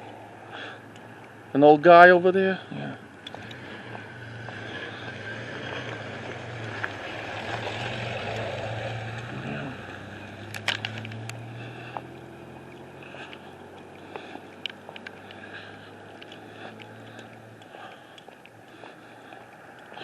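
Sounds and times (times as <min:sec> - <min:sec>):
vehicle passing: 0:00.0 - 0:20.0
sharp clicks: 0:10.5 - 0:15.5, 0:16.2 - 0:18.7.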